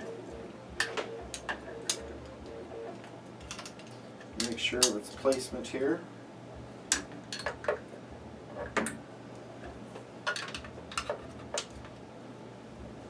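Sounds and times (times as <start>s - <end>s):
small hard parts clicking: 3.4s - 5.4s, 10.2s - 12.0s.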